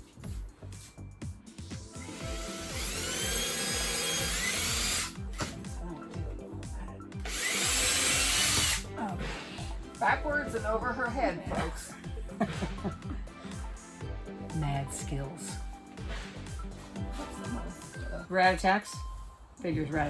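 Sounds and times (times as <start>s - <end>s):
music with steady beat: 0.0s - 20.0s
power drill whirring: 2.0s - 5.6s, 7.2s - 9.0s.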